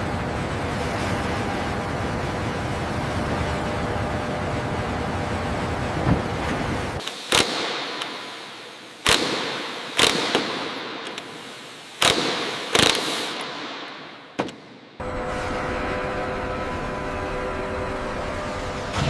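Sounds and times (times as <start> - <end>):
steady hiss: 7.0 - 15.0.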